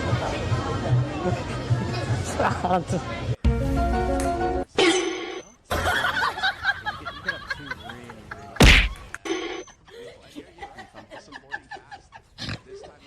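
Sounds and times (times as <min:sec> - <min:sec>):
loud whack: 0:08.6 - 0:09.1.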